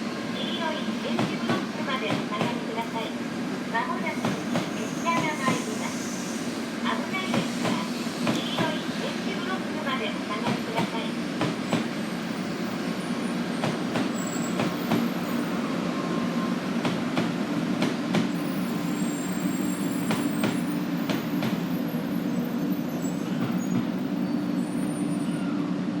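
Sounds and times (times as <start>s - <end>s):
train rumbling: 0.0s - 26.0s
short high squeals: 22.8s - 25.6s.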